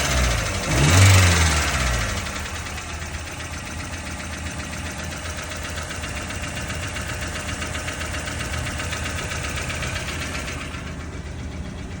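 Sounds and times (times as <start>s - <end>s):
car engine hum: 0.0s - 12.0s
fast steady engine clicking: 0.0s - 12.0s.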